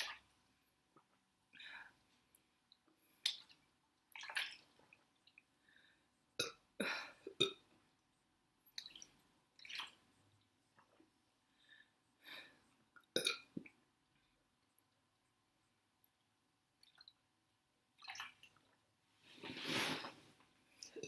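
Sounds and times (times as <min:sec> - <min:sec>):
woman gulping a drink: 0:13.0 - 0:13.7.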